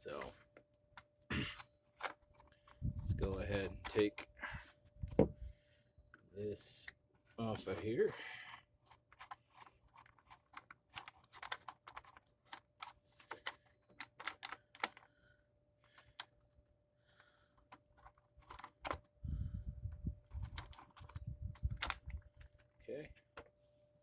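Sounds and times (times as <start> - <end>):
plastic cover clicking and rattling: 8.9 - 15.1, 17.7 - 19.1, 20.3 - 22.7.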